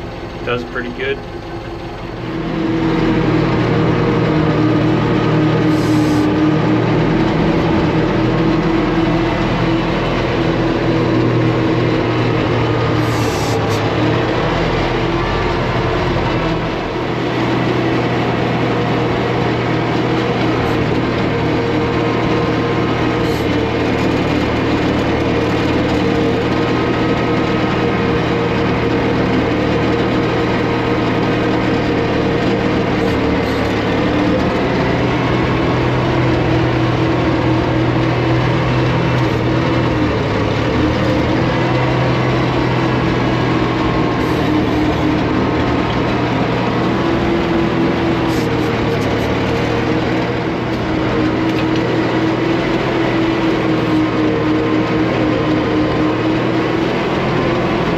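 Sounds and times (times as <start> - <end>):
gasoline engine running: 0.0 - 57.9.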